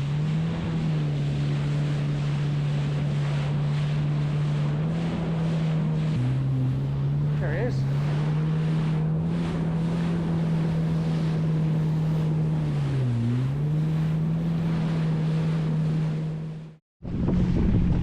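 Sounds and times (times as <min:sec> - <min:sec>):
jet ski engine idling: 0:00.0 - 0:18.0
wind noise on microphone: 0:17.0 - 0:18.0.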